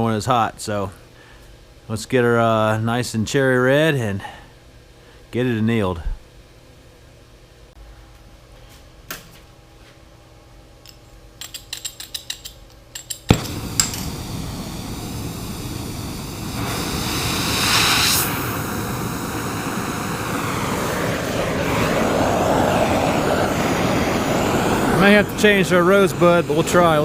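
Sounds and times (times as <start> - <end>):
torch igniter clicks: 13.2 - 18.7
gas igniting pop: 13.3 - 19.4
torch flame hissing: 13.3 - 27.0.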